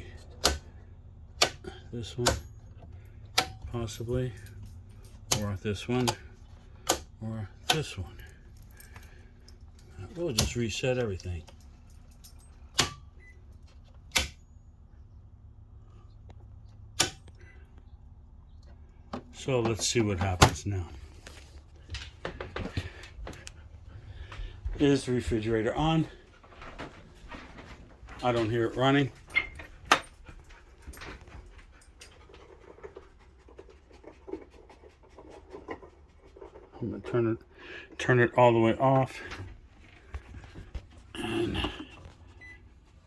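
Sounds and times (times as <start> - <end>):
handling clicks and rustles: 0.0 - 43.0
low steady hum: 0.0 - 43.0
circuit breakers clicking: 0.3 - 0.8, 1.4 - 2.6, 12.7 - 13.1, 14.0 - 14.4, 16.9 - 17.4.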